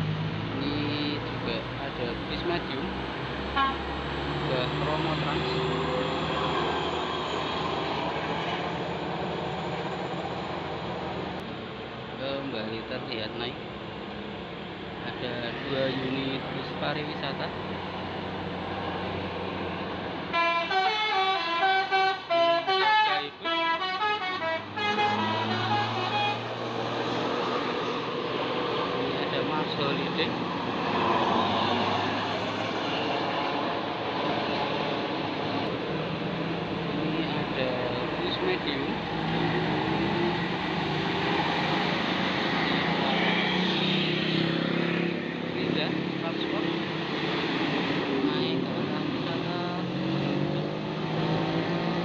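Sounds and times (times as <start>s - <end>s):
bus engine drone: 0.0s - 52.0s
musical air horn melody: 20.3s - 26.6s.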